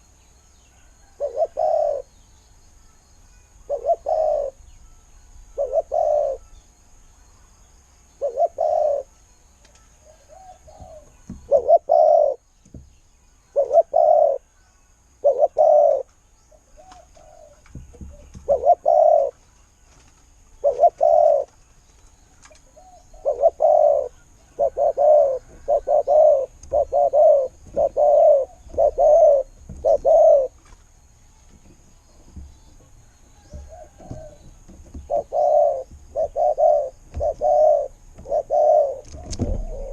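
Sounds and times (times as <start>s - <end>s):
dove cooing: 1.0s - 2.1s, 3.7s - 4.6s, 5.6s - 6.4s, 8.2s - 9.1s, 10.0s - 12.4s, 13.5s - 14.5s, 15.2s - 19.4s, 20.6s - 21.5s, 22.6s - 30.6s, 33.3s - 39.9s.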